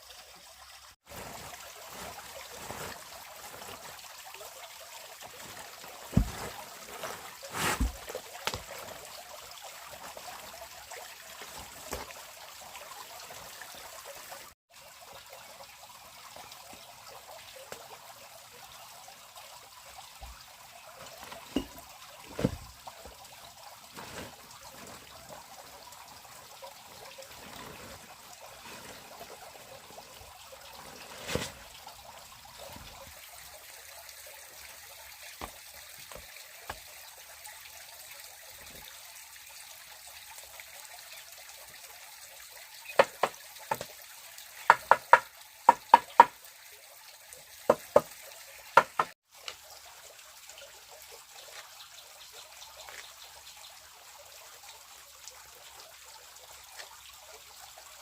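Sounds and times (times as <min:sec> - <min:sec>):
water trickling: 0:00.0 - 0:58.0.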